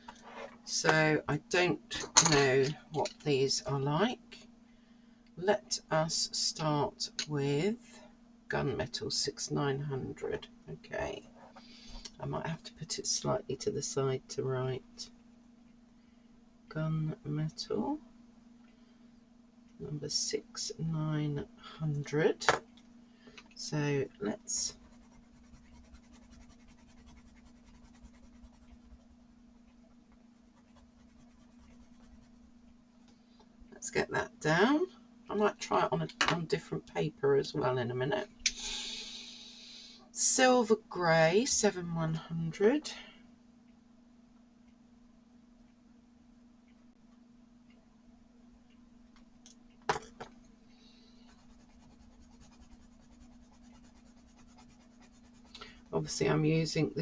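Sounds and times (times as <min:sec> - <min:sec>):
steady low hum: 0:00.0 - 0:57.0
pencil scribbling on paper: 0:24.6 - 0:29.0, 0:30.5 - 0:32.4, 0:51.3 - 0:55.6.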